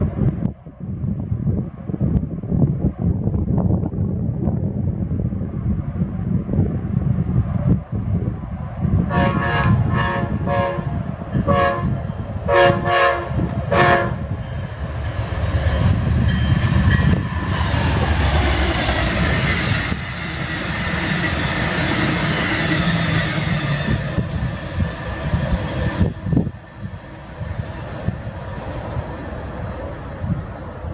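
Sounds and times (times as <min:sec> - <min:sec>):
train wheels rumbling on rails: 0:00.0 - 0:30.9
train air horn blasts: 0:09.1 - 0:14.4.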